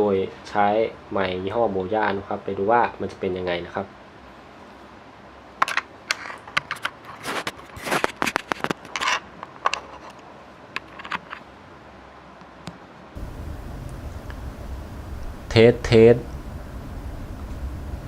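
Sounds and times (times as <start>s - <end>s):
camera and microphone handling: 6.2s - 10.2s.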